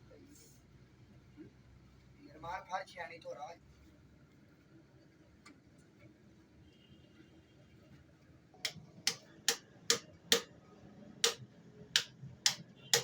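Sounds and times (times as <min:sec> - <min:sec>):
sharp taps or knocks: 0:08.7 - 0:10.5, 0:11.2 - 0:11.4, 0:12.0 - 0:13.0.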